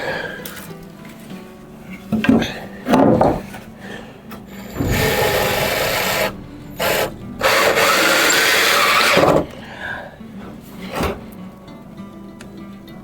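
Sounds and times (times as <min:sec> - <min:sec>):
power drill driving screws: 0:04.6 - 0:09.5.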